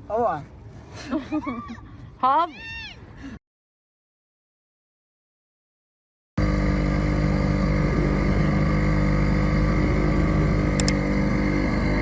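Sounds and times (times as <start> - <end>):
boat engine running: 6.4 - 12.0.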